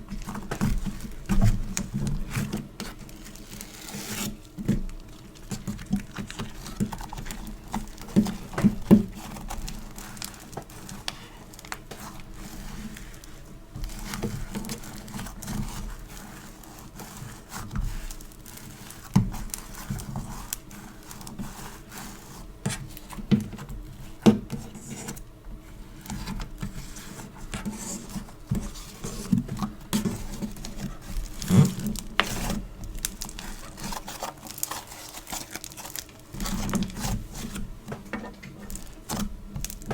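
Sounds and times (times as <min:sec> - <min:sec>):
slime crackling and clicking: 0:30.6 - 0:37.0.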